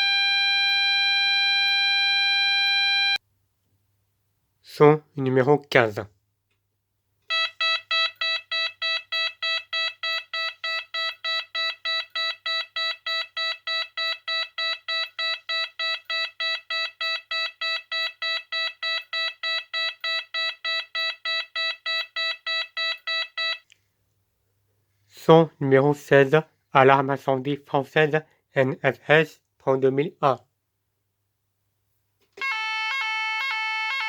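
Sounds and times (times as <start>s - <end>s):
fire alarm short beeps: 7.3s - 23.6s, 32.4s - 34.0s.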